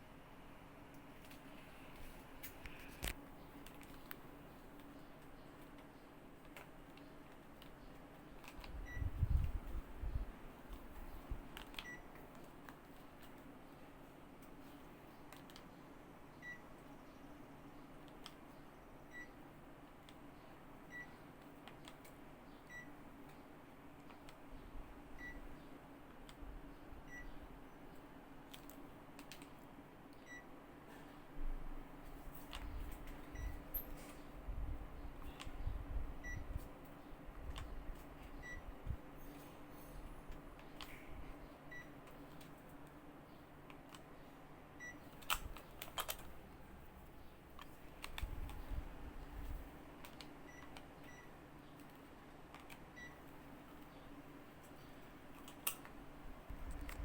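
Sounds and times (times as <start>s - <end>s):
steady low hum: 0.0s - 57.0s
air conditioner short beeps: 8.8s - 10.2s, 11.7s - 12.1s, 16.4s - 16.7s, 19.0s - 19.4s, 20.8s - 21.2s, 22.6s - 23.0s, 25.2s - 25.5s, 27.0s - 27.4s, 30.2s - 30.6s, 33.2s - 34.3s, 35.2s - 36.7s, 38.2s - 40.3s, 41.7s - 42.0s, 44.8s - 45.2s, 50.4s - 51.4s, 52.9s - 53.3s
sharp clicks: 45.2s - 46.4s.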